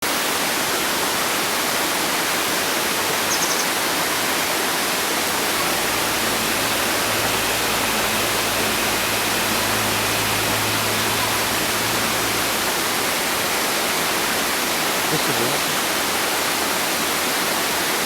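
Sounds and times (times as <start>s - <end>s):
bird call: 3.3s - 3.7s
loud rushing hiss: 4.6s - 17.9s
low steady hum: 5.3s - 15.2s.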